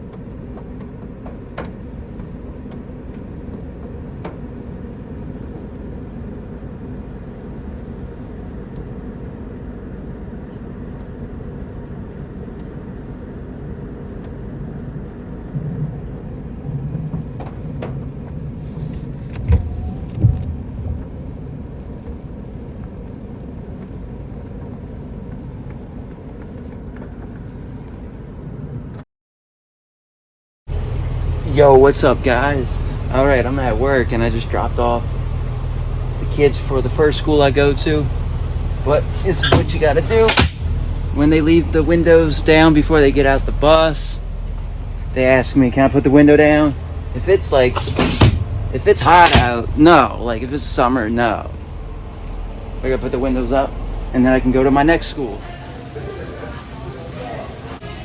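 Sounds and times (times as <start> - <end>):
low knocks: 30.7 - 50.4
car engine idling: 30.7 - 58.0.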